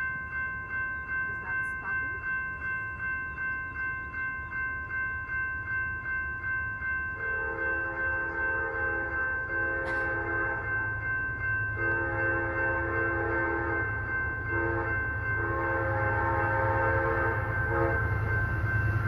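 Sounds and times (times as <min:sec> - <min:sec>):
railroad crossing bell ringing: 0:00.0 - 0:19.0
locomotive horn chord: 0:07.2 - 0:10.7, 0:11.8 - 0:13.9, 0:14.5 - 0:18.3.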